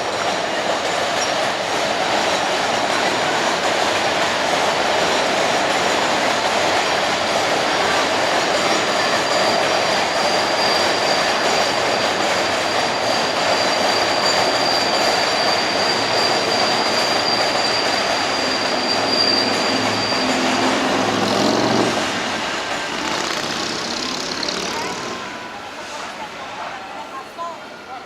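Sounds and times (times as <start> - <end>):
subway train wheels on rails: 0.0 - 28.0
high-pitched wheel squeal: 8.5 - 22.1.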